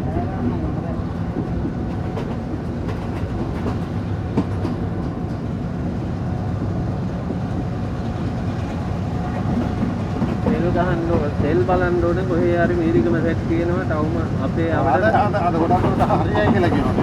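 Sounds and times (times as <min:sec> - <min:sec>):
train rumble inside coach: 0:00.0 - 0:17.0
wheels clicking over rail joints: 0:01.3 - 0:05.5, 0:07.6 - 0:11.8, 0:15.5 - 0:17.0.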